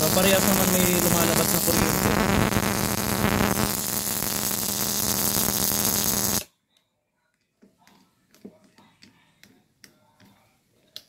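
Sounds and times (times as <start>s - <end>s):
crackle of high-voltage sparks: 0.0s - 6.5s
steady electrical hum: 0.0s - 6.5s.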